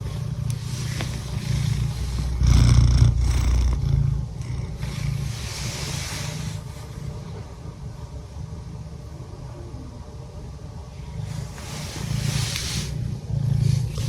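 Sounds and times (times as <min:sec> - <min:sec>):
soft airy hiss: 0:00.0 - 0:08.0, 0:10.8 - 0:14.0
cat purring: 0:00.0 - 0:10.0, 0:10.8 - 0:14.0.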